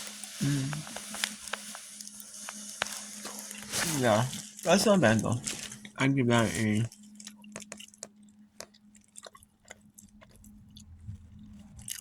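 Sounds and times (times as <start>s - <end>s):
person chewing: 5.4s - 11.0s, 11.7s - 12.0s.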